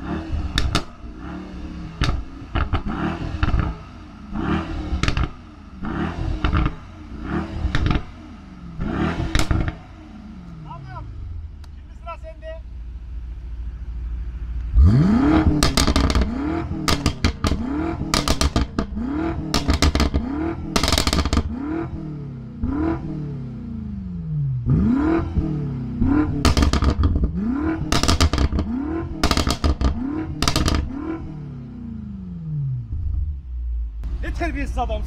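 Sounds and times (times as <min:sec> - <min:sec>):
car engine revving: 0:00.0 - 0:35.0
exhaust pops and crackles: 0:00.5 - 0:01.0, 0:02.0 - 0:03.8, 0:05.0 - 0:05.4, 0:06.4 - 0:06.8, 0:07.6 - 0:08.1, 0:08.8 - 0:09.8, 0:14.5 - 0:21.6, 0:26.1 - 0:30.9.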